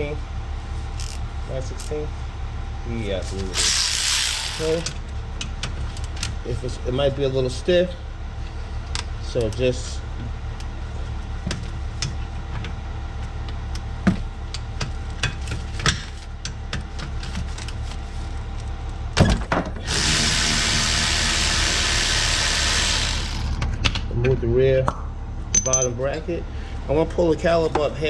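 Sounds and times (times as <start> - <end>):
steady low hum: 0.0 - 28.0
power tool running: 3.4 - 5.0, 19.8 - 23.7
tools clicking and knocking: 25.5 - 25.9.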